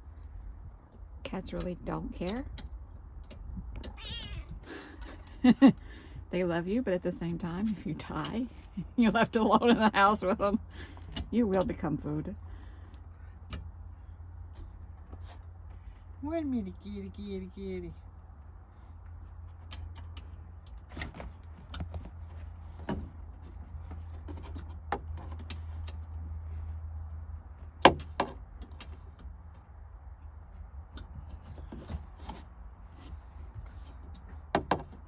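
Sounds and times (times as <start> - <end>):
steady low hum: 0.0 - 24.9.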